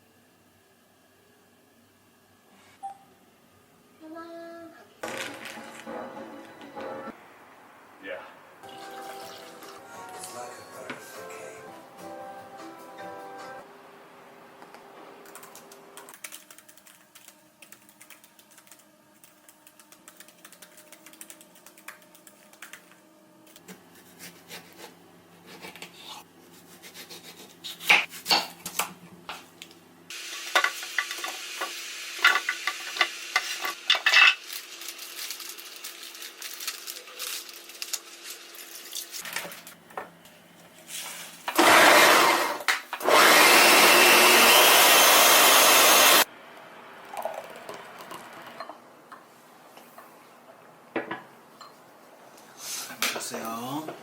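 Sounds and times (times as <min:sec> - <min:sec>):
dishes and cutlery clinking: 0:51.1 - 0:51.8.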